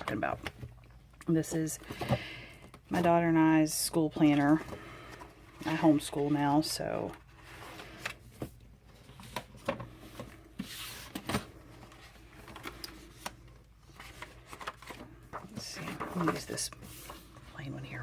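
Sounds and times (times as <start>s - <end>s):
paper pages rustling: 7.4s - 17.5s.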